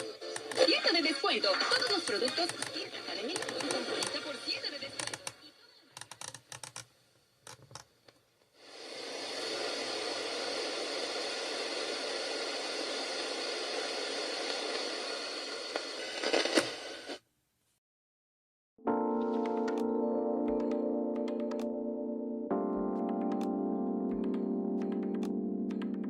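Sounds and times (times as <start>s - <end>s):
radio static hiss: 0.0s - 5.1s, 8.6s - 17.3s
radio crackles: 0.0s - 5.3s, 8.9s - 17.2s.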